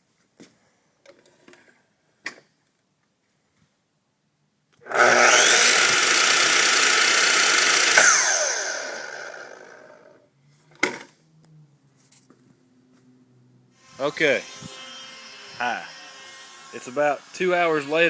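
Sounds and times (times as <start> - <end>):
miter saw motor: 4.8 - 10.2.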